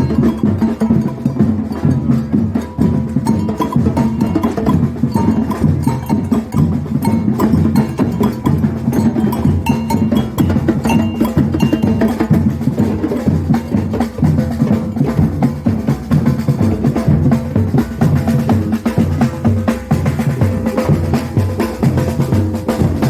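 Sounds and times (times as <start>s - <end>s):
snare drums: 0.0s - 23.0s.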